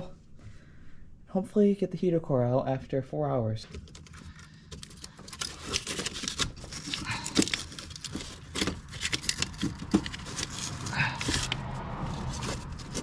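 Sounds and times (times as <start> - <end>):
scraping and rustling: 3.7 - 13.0.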